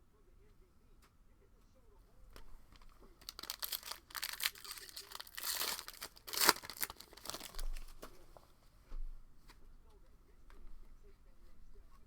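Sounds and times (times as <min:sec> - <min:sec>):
wrapper crinkling and tearing: 0:02.4 - 0:08.0.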